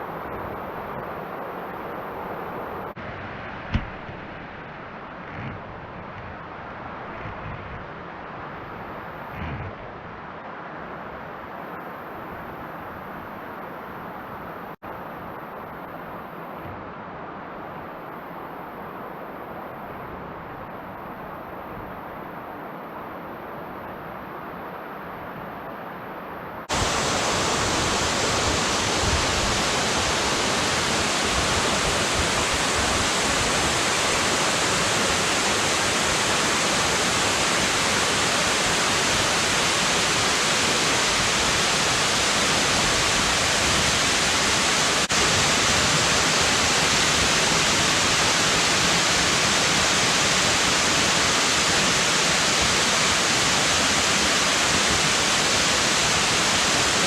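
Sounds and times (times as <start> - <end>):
waterfall rushing: 26.7 - 57.0.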